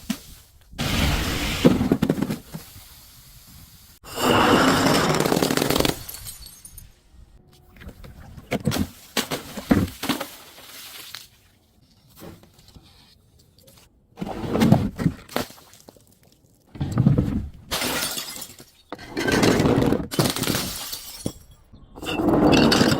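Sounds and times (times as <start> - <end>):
glass shattering crash: 5.2 - 7.0, 17.7 - 18.8, 20.2 - 21.6
glass pieces crunching: 5.3 - 7.0, 20.2 - 21.6.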